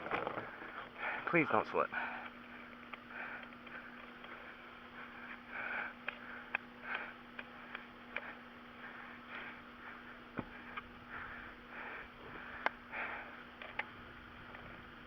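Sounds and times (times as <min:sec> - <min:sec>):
faint steady hum: 0:00.0 - 0:15.0
breathing and sniffing: 0:00.4 - 0:01.3, 0:01.9 - 0:13.8.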